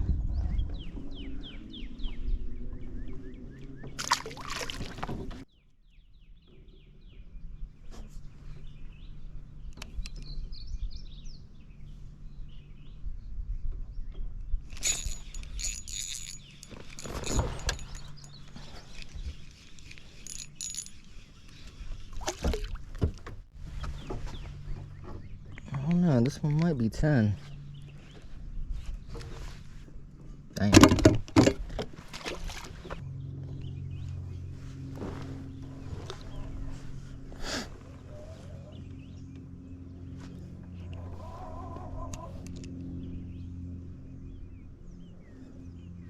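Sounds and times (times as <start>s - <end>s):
birds chirping faintly: 13.9s - 22.7s
knocks and clatter: 30.7s - 32.0s.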